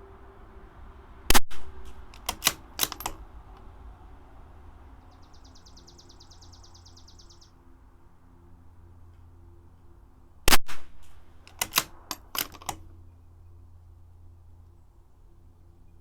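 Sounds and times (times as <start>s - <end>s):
rifle shot: 1.3s - 3.2s, 10.5s - 12.8s
rifle bolt metallic clicks: 1.3s - 3.7s, 10.5s - 13.0s.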